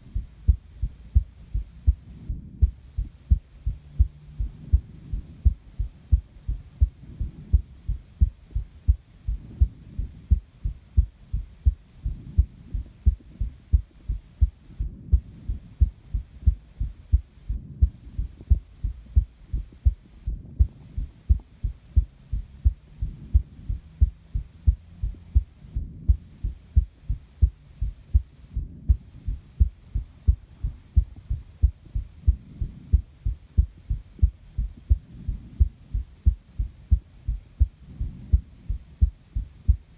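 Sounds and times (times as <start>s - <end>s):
heartbeat thumps: 0.0s - 39.9s.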